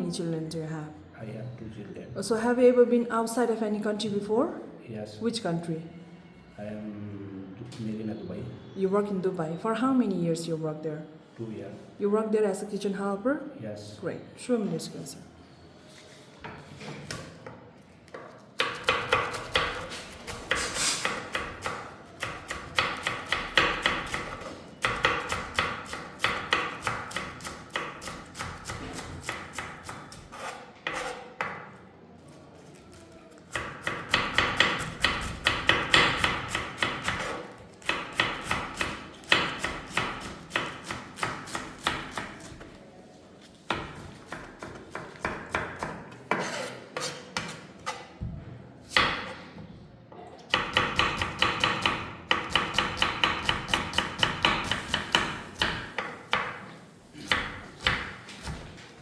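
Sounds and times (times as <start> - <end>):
knife chopping on cutting board: 18.6 - 31.6, 33.5 - 42.6, 43.7 - 48.1, 50.6 - 56.6, 57.2 - 58.7.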